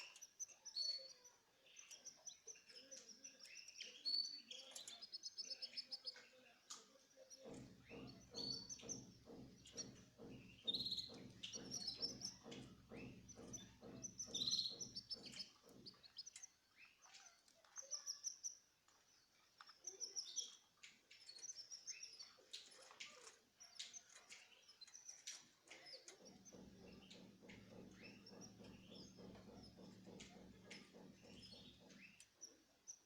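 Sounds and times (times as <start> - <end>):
small birds chirping: 0.0 - 33.0.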